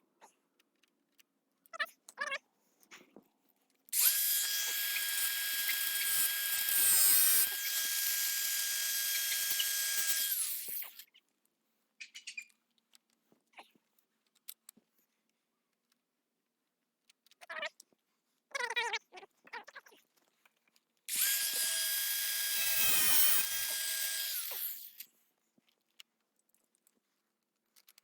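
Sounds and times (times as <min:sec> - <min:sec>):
angle grinder running: 0:04.0 - 0:11.0, 0:21.1 - 0:25.0.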